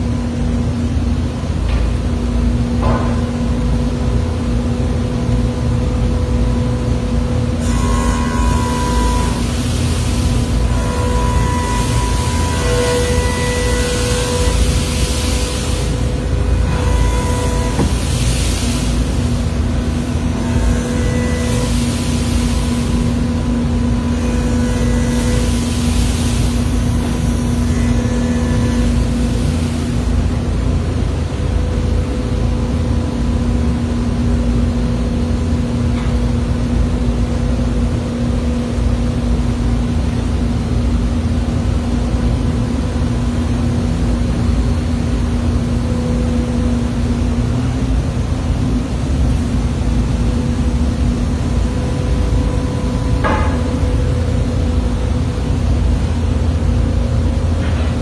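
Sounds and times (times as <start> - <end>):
brief knock: 2.8 - 3.4, 17.8 - 18.0.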